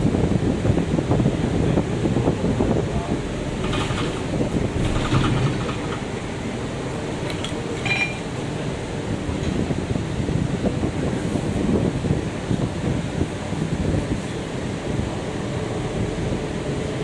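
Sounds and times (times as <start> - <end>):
bus engine running: 0.0 - 17.0
faint rattles: 3.5 - 8.3.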